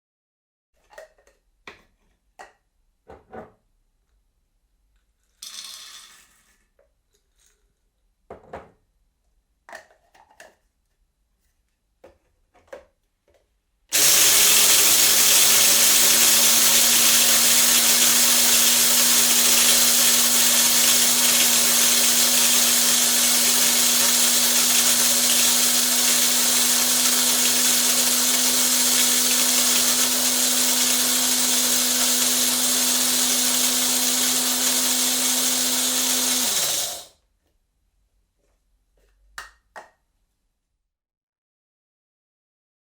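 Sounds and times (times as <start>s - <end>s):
coffee grinder motor grinding: 13.9s - 37.1s
coffee beans rattling: 14.0s - 37.0s.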